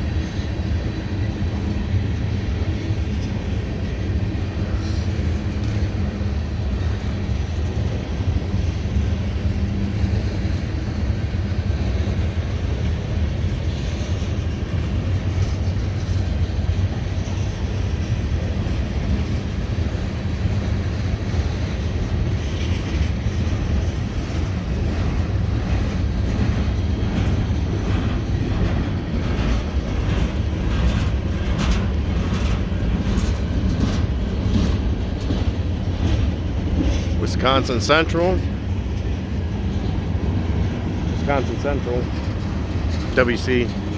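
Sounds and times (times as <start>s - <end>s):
train wheels rumbling on rail: 0.0s - 43.9s
wheels clicking over rail joints: 0.1s - 43.9s.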